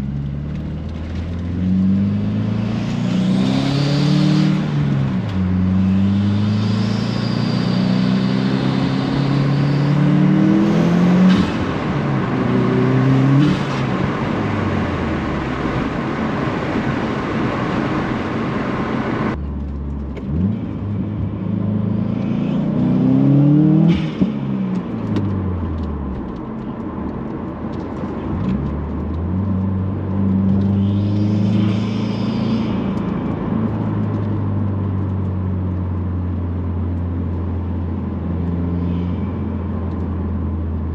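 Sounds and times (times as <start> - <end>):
car engine accelerating: 0.0 - 40.9
high turbo whistle: 5.8 - 11.6, 30.7 - 33.9.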